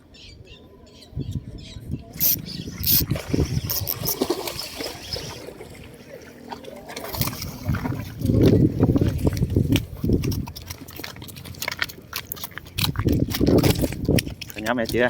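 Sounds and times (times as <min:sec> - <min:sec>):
wind buffeting microphone: 0:01.1 - 0:05.9, 0:07.1 - 0:11.0, 0:12.6 - 0:15.0.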